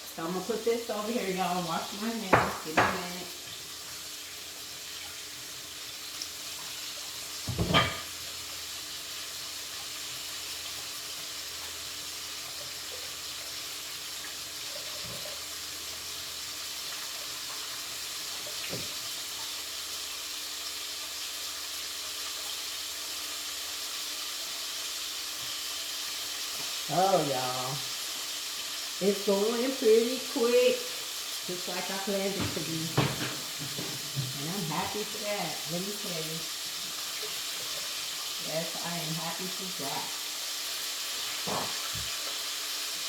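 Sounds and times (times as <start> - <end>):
tap water running into sink: 6.1 - 8.1, 16.8 - 19.7, 32.3 - 35.2, 41.4 - 42.4.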